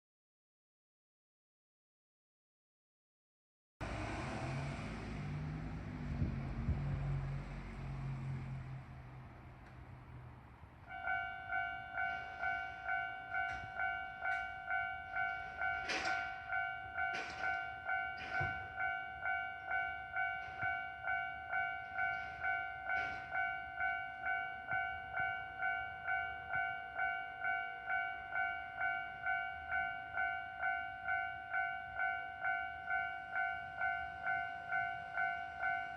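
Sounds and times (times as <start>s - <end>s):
road vehicle engine: 3.8s - 14.2s
level crossing warning bell: 10.9s - 35.9s.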